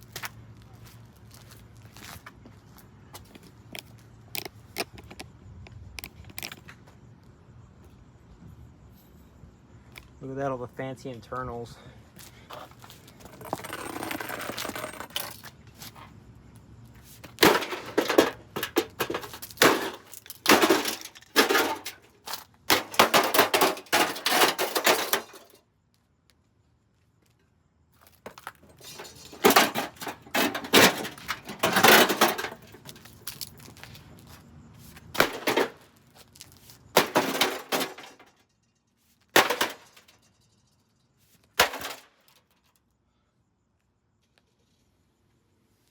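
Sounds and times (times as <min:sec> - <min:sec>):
microwave oven being smashed: 0:17.4 - 0:25.6, 0:28.3 - 0:33.1, 0:35.1 - 0:35.9, 0:36.9 - 0:38.5, 0:39.3 - 0:40.2, 0:41.6 - 0:42.5.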